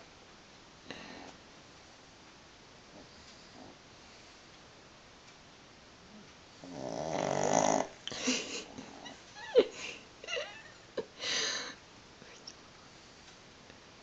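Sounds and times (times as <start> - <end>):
dog snoring: 2.9 - 3.8, 6.1 - 8.0.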